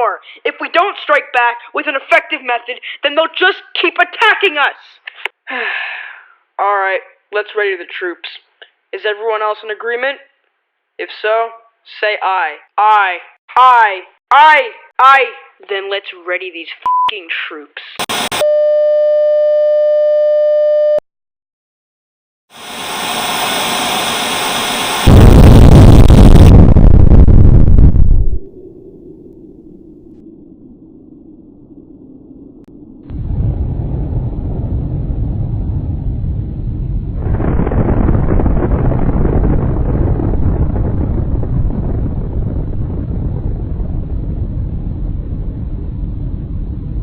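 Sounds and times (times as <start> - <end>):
explosion rumble: 22.7 - 47.0.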